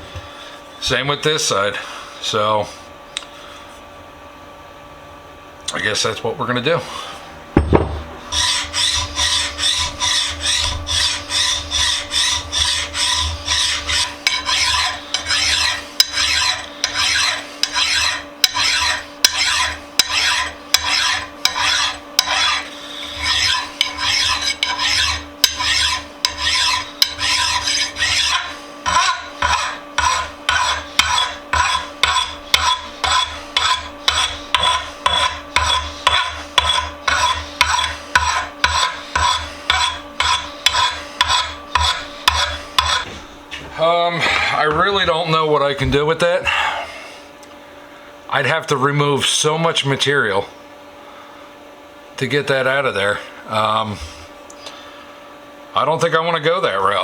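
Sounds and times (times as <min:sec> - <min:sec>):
hand file rasping on metal: 0:08.2 - 0:43.3.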